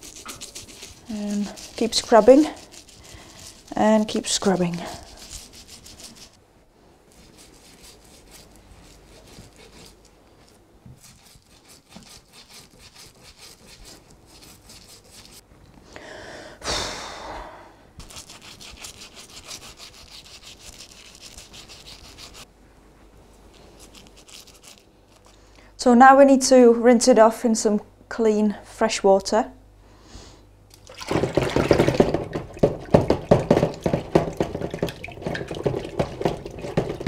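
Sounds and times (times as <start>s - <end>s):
toothbrush scrubbing threads: 0.0s - 6.4s, 7.1s - 15.4s, 18.0s - 22.5s, 23.5s - 25.4s, 31.1s - 37.0s.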